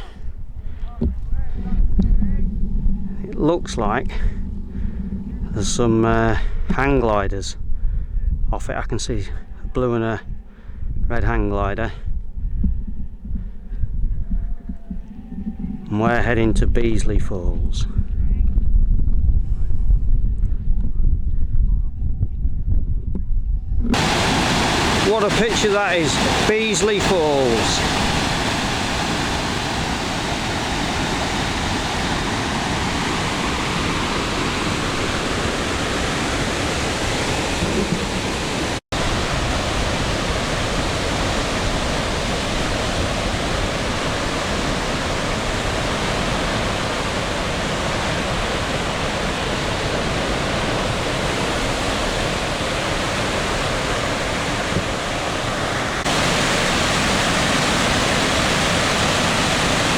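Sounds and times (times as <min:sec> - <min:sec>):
waterfall rushing: 0:23.9 - 0:59.9.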